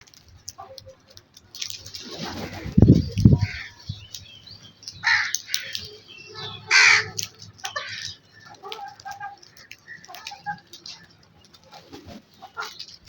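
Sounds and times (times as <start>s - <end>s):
bird chirps: 2.6s - 13.0s
crows cawing: 3.4s - 3.9s, 5.0s - 10.6s.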